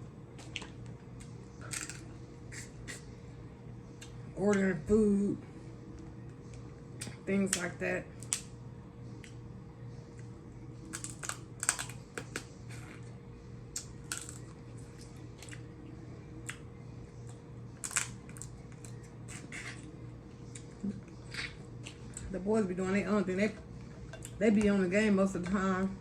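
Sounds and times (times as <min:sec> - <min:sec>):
steady low hum: 0:00.0 - 0:26.0
chewing and handling seafood: 0:00.3 - 0:03.1, 0:10.1 - 0:22.3.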